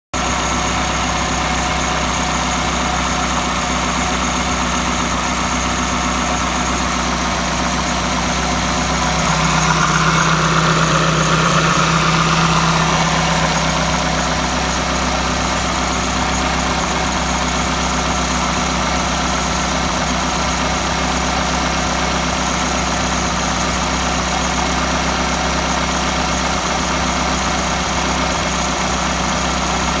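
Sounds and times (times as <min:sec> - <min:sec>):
car engine idling: 0:00.2 - 0:30.0.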